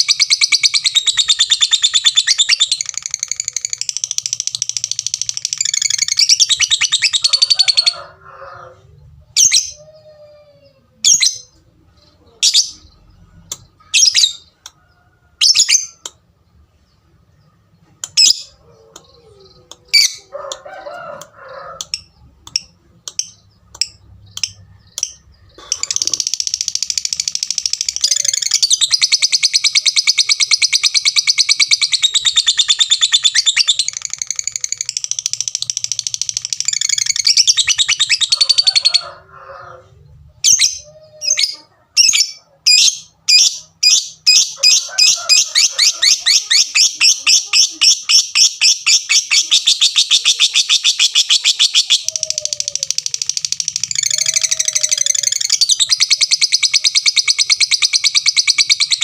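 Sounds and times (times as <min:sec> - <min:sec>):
lovebird rapid chatter: 0:00.0 - 0:07.6, 0:21.9 - 0:39.0, 0:42.0 - 0:59.0.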